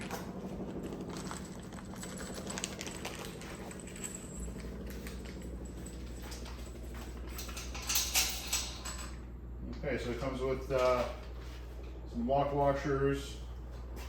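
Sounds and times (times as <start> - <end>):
metal hardware clicking and rattling: 0.0 - 9.8
low steady hum: 0.0 - 14.0.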